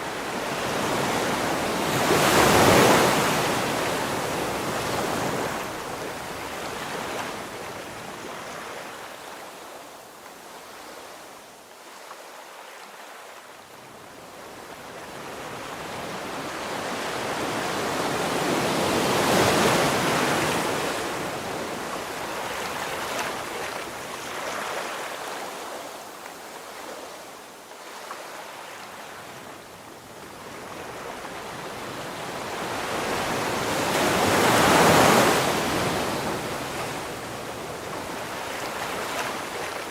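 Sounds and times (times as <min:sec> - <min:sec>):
sea waves washing in: 0:30.4 - 0:39.9.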